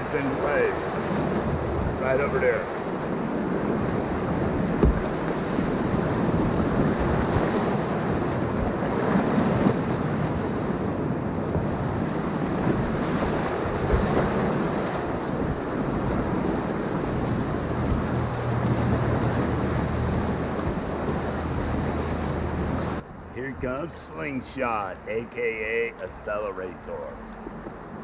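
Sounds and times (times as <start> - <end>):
wind buffeting microphone: 0.0 - 24.3
whitewater river rushing: 0.0 - 28.0
low knocks: 4.7 - 5.2.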